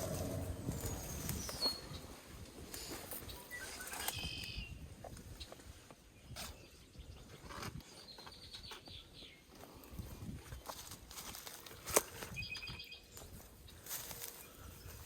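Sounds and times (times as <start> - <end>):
low outdoor rumble: 0.0 - 2.6
small birds chirping: 0.0 - 15.0.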